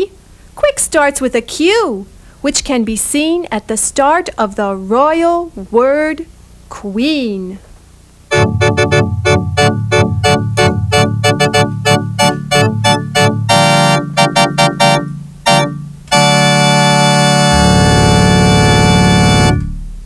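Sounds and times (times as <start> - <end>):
organ-like electronic keyboard music: 8.3 - 20.0.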